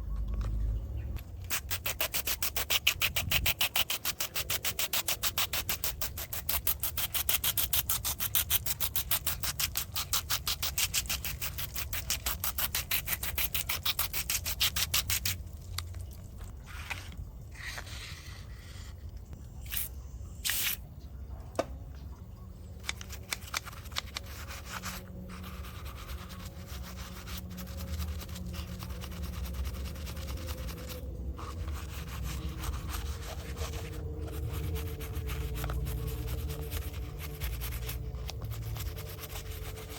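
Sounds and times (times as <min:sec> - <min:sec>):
low hum: 0:00.0 - 0:03.5, 0:09.2 - 0:39.9
scrubbing strokes: 0:22.8 - 0:39.9.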